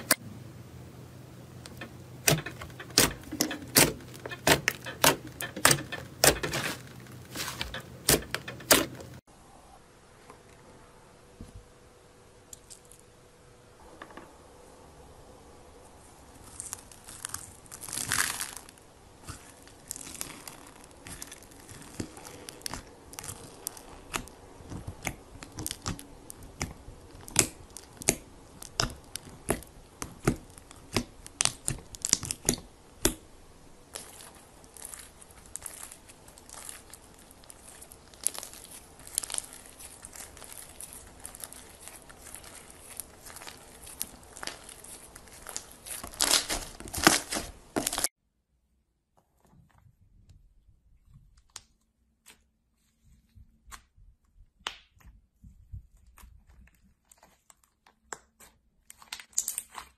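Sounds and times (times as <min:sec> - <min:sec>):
slime crackling and popping: 0:16.4 - 0:48.1, 0:58.9 - 0:59.9.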